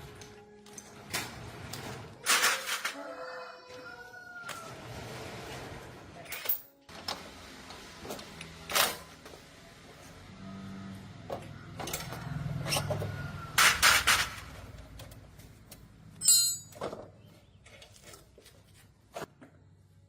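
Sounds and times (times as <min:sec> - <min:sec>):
short metallic ring: 0:16.2 - 0:16.8.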